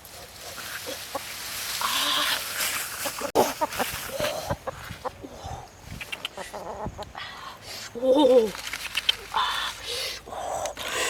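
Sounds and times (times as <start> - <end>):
rustling: 0.0 - 5.2, 8.3 - 9.6.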